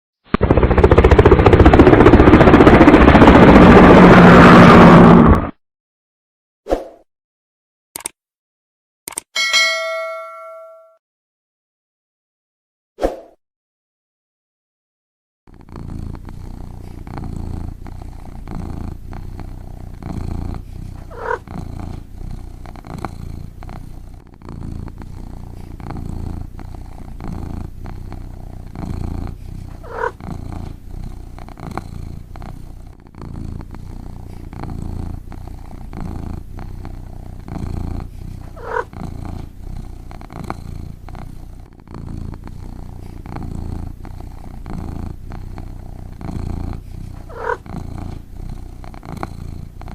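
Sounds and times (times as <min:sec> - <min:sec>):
cat purring: 0:15.5 - 0:49.9.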